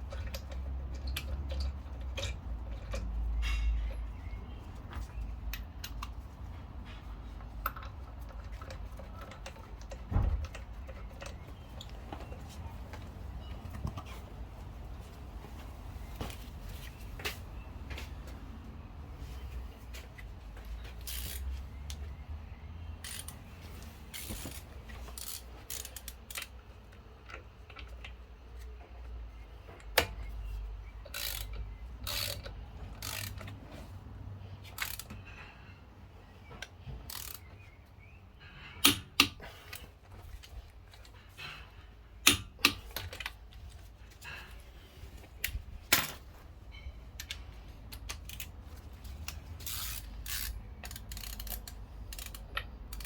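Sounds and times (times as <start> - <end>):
ratchet clicking: 21.0 - 22.0, 23.0 - 23.4, 24.1 - 26.6, 31.0 - 33.6, 34.7 - 35.1, 37.1 - 37.5, 47.2 - 53.0.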